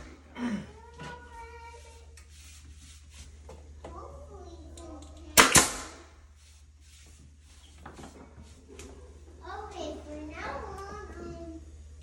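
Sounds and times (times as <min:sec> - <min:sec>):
nail gun firing into wood: 0:05.4 - 0:06.1.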